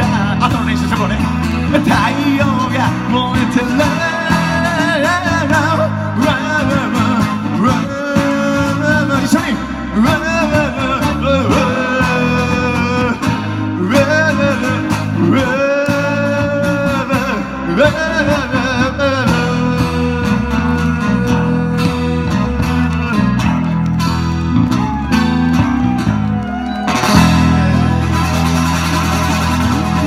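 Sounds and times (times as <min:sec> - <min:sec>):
person singing: 0:00.0 - 0:23.3
live pop-rock band: 0:00.0 - 0:30.0.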